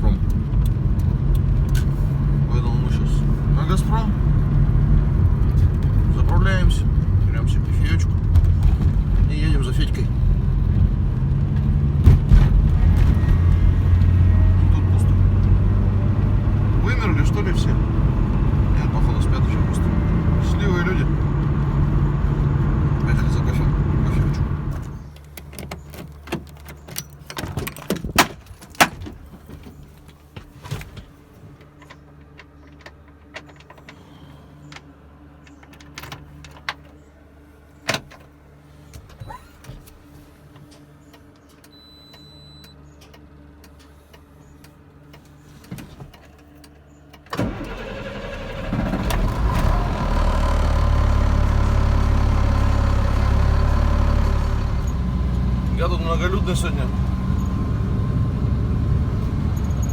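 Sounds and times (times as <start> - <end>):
low hum: 0.0 - 25.2
car engine running: 0.0 - 26.9, 47.4 - 59.9.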